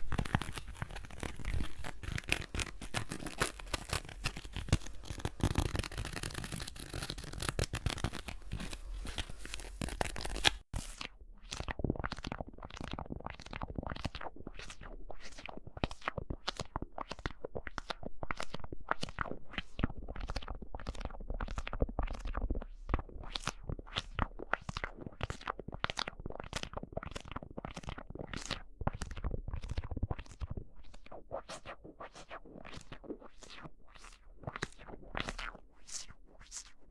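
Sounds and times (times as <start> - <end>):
scratching and crinkling: 0.0 - 14.2.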